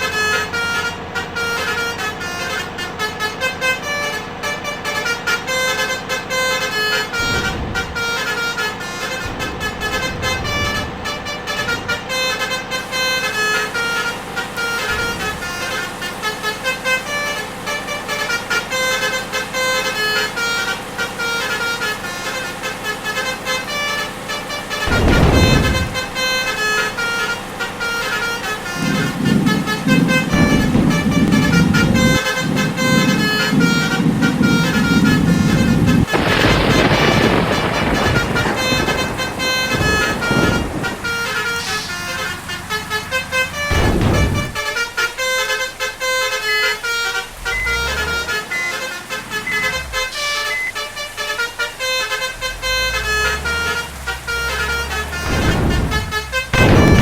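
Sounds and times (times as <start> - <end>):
multi-tone bus horns tooting: 0.0 - 57.0
vehicles whooshing past: 5.5 - 17.8, 24.5 - 45.4, 52.3 - 57.0
deep rumble: 6.7 - 16.3, 24.8 - 27.6, 28.4 - 45.0, 47.3 - 50.7, 55.1 - 57.0.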